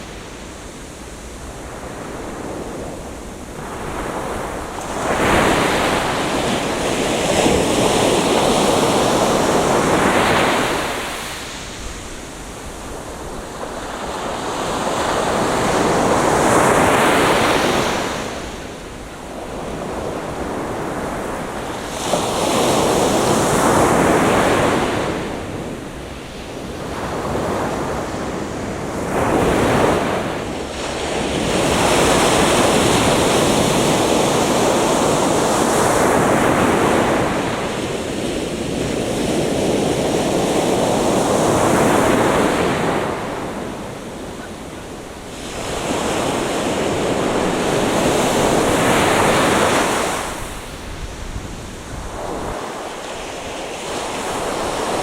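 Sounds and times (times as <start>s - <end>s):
waves breaking on beach: 0.0s - 55.0s.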